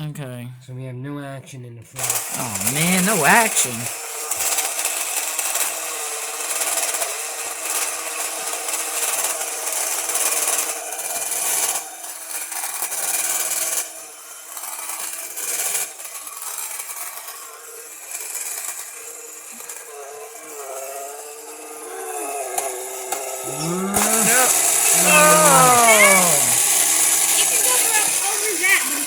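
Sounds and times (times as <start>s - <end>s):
toy motor and gears whirring: 2.0s - 4.6s, 19.1s - 29.0s.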